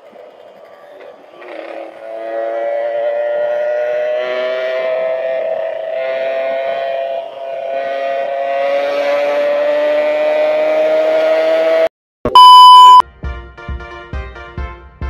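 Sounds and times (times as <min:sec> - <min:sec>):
loud electronic beep: 0:12.3 - 0:13.0.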